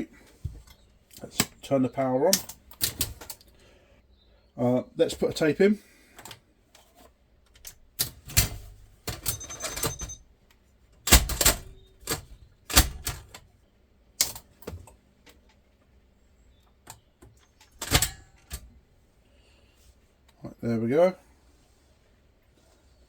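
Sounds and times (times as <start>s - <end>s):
video recorder mechanism clunking: 17.6s - 18.6s.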